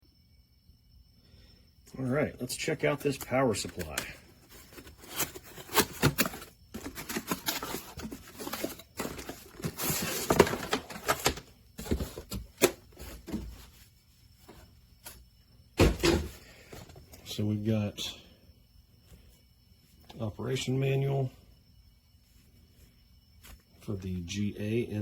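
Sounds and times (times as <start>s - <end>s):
packaging clicks and knocks: 3.1s - 13.5s
paper or plastic rustling and tearing: 3.6s - 13.4s.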